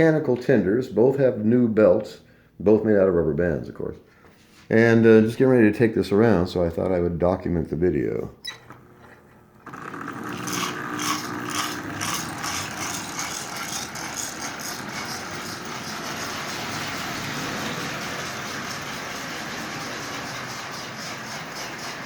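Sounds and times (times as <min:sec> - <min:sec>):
motor and wheel rattle: 0:08.4 - 0:22.0
toy train chuffing: 0:09.7 - 0:22.0.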